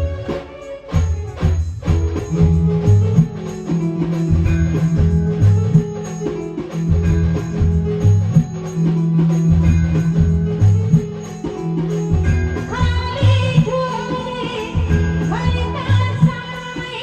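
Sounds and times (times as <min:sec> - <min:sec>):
jingling percussion: 0:00.0 - 0:17.0
steady drum beat: 0:00.0 - 0:17.0
street band playing: 0:00.0 - 0:17.0
low bass notes: 0:01.9 - 0:03.3, 0:04.3 - 0:05.9, 0:06.9 - 0:08.4, 0:09.3 - 0:11.0.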